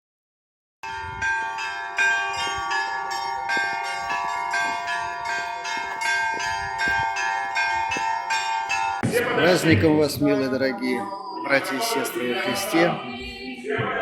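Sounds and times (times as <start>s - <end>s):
church bells ringing: 0.8s - 13.0s.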